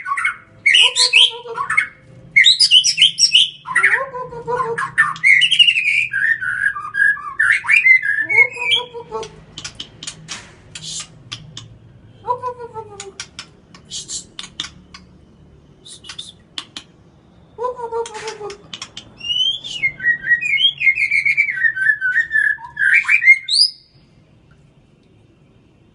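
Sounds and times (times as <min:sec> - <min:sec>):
bird singing warbling whistles: 0:00.0 - 0:03.9, 0:04.8 - 0:08.8, 0:19.2 - 0:23.9.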